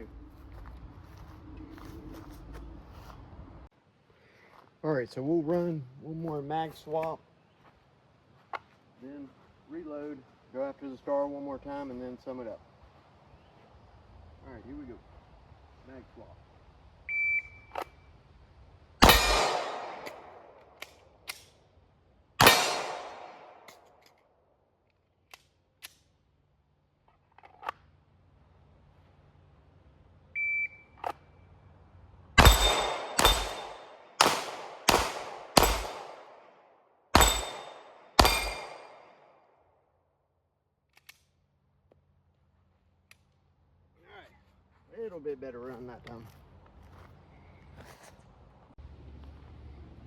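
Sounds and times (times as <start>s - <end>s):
pistol shots: 19.0s - 21.4s, 22.4s - 23.9s, 32.4s - 39.3s.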